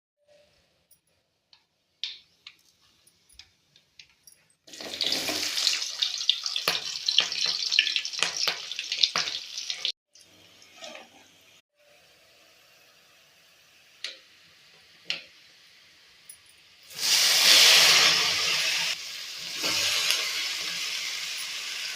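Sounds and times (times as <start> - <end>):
water running from tap into sink: 4.7 - 10.8.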